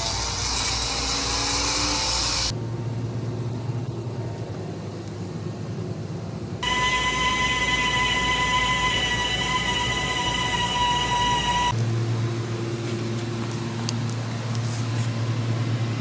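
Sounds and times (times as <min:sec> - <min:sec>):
power tool high whine: 0:00.0 - 0:02.5, 0:06.6 - 0:16.0
power tool hissy grinding: 0:00.0 - 0:02.5
low rumble: 0:00.1 - 0:16.0.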